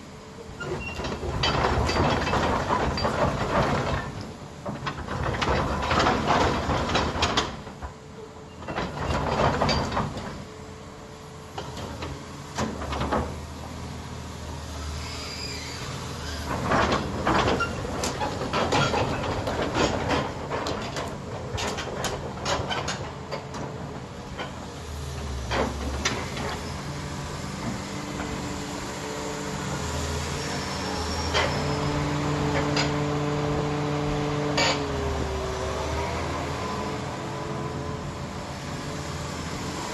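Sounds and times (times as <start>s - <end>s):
excavator scraping and clattering: 0.6s - 10.7s, 11.5s - 39.9s
diesel engine droning: 23.1s - 39.9s.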